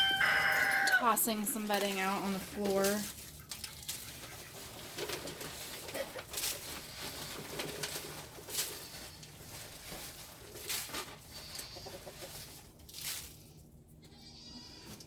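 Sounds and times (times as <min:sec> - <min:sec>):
wood shavings scattering on floor: 0:00.0 - 0:01.0.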